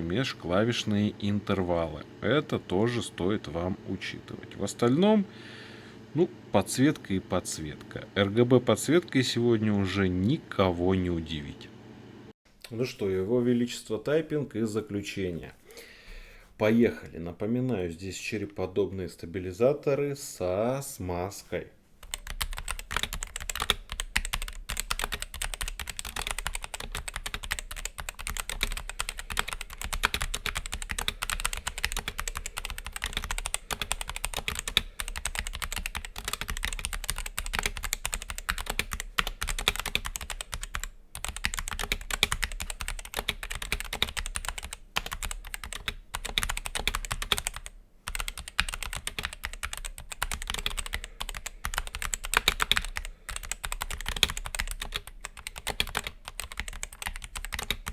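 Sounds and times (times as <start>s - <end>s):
mechanical keyboard typing: 22.0s - 57.9s.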